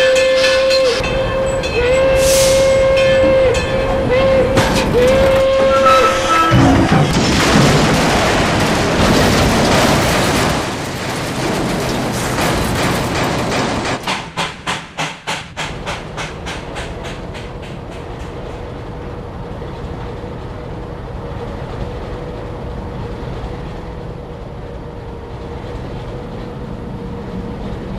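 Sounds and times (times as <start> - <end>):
steam locomotive chuffs: 0.0 - 19.0
rush of steam: 2.1 - 3.0.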